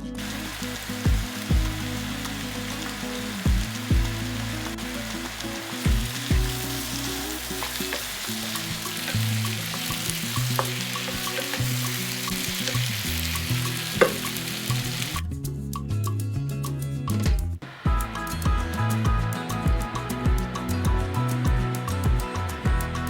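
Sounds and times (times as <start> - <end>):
food sizzling in hot oil: 0.0 - 15.2.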